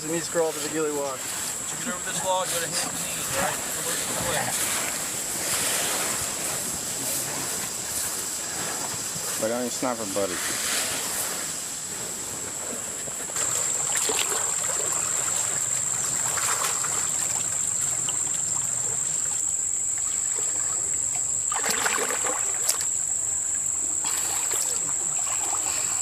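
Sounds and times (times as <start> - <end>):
water sloshing and splashing: 10.4 - 26.0.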